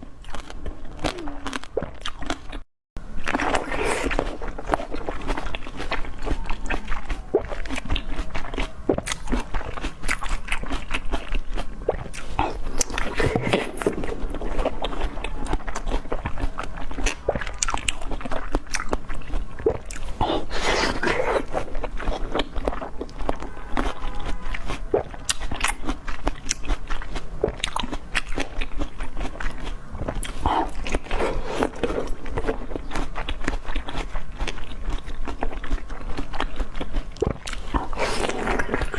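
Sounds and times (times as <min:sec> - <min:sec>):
biting and chewing food: 0:00.0 - 0:38.9
wet mouth clicks: 0:05.5 - 0:21.9, 0:30.0 - 0:33.6.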